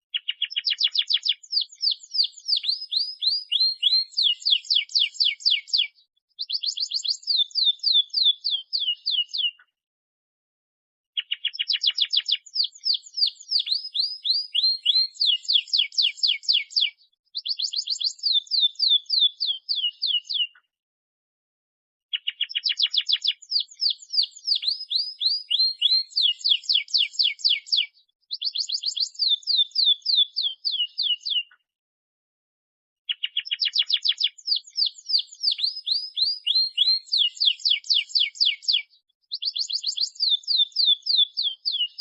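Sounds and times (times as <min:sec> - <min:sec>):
canary singing trills: 0:00.1 - 0:09.7, 0:11.2 - 0:20.6, 0:22.1 - 0:31.6, 0:33.1 - 0:42.0.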